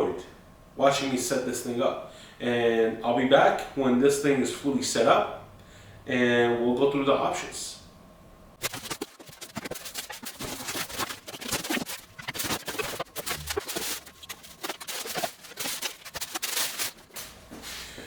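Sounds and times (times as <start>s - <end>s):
packaging scraping: 8.6s - 17.4s
packaging rustling: 8.6s - 17.5s.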